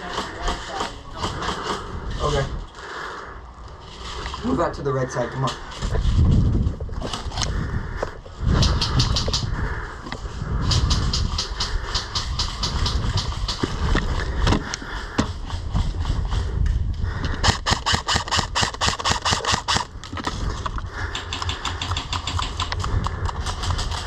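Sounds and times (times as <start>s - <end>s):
steady low rumble: 1.0s - 24.0s
airsoft rifles firing bursts: 17.4s - 19.9s, 21.1s - 22.7s.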